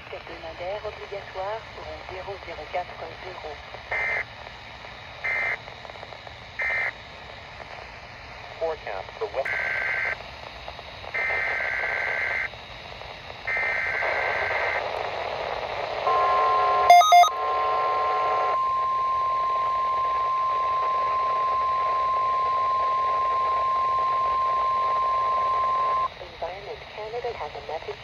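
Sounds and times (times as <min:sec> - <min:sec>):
steady warning alarm tone: 0:16.1 - 0:26.1.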